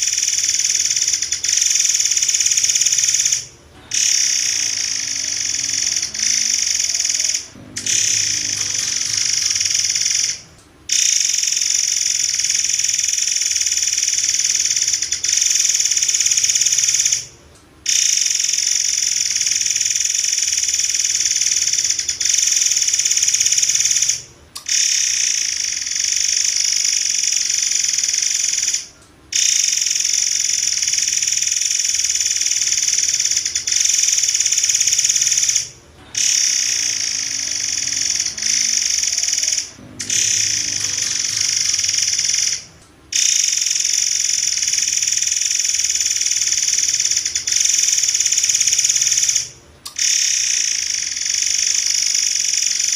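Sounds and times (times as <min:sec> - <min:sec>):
bird singing rapid high trill: 0:01.0 - 0:10.4.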